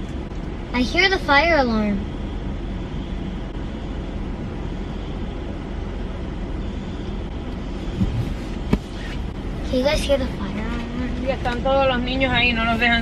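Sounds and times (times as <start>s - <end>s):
low rumble of vehicles: 0.0s - 13.0s
low bumps: 2.0s - 13.0s
distant fire alarm: 2.1s - 8.1s.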